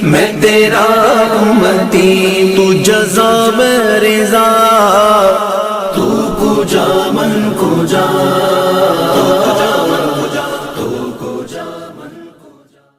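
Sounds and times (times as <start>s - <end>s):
voices chanting long notes: 5.9s - 12.8s.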